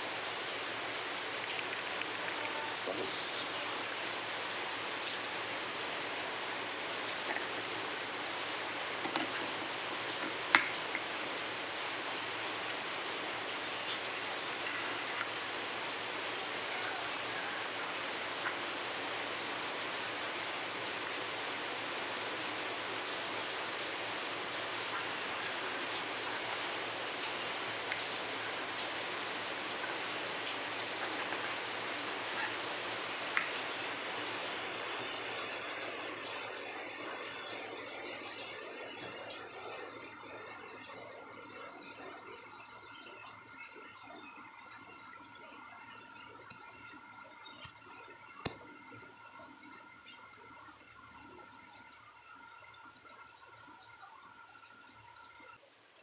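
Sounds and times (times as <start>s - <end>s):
steady hiss: 0.0s - 37.5s.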